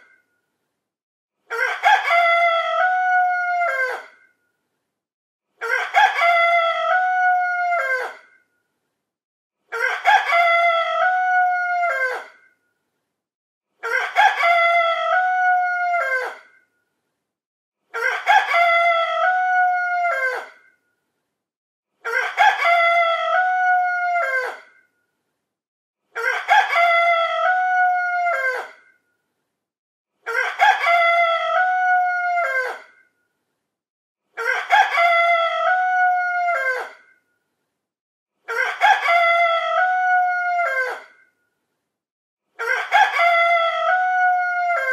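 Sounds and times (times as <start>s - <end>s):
rooster crowing: 1.5s - 4.2s, 5.6s - 8.3s, 9.8s - 12.5s, 13.8s - 16.5s, 18.0s - 20.6s, 22.1s - 24.8s, 26.2s - 28.8s, 30.3s - 33.0s, 34.4s - 37.1s, 38.5s - 41.2s, 42.6s - 44.9s.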